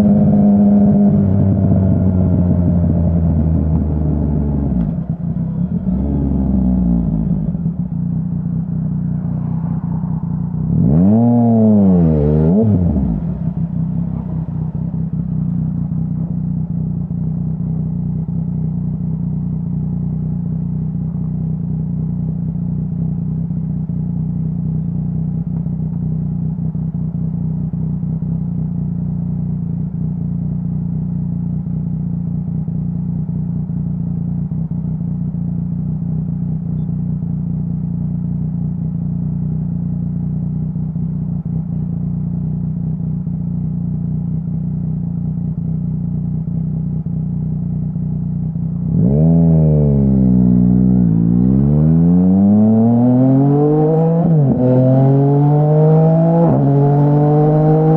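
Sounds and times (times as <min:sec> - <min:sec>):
motorcycle engine revving and idling: 0:00.0 - 0:57.9.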